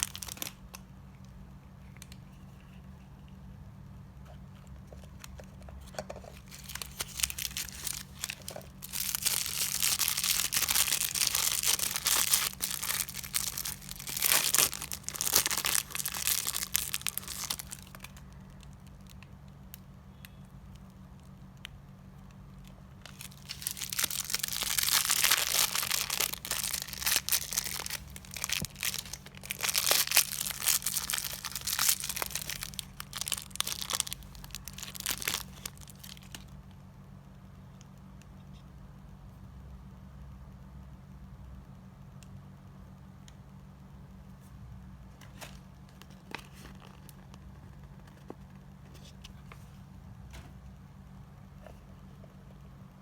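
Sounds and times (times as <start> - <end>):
packaging crinkling and tearing: 0.0 - 0.8, 5.1 - 19.2, 23.0 - 36.6, 45.2 - 48.4.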